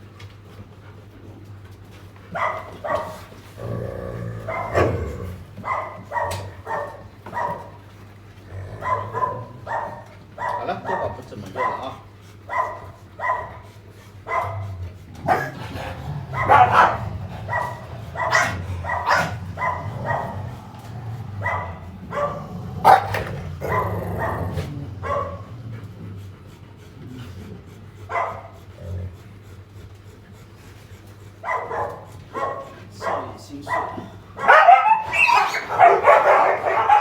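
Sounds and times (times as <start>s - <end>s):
dogs barking: 2.3s - 26.0s, 28.0s - 29.1s, 31.4s - 37.0s
steady low hum: 12.1s - 32.0s.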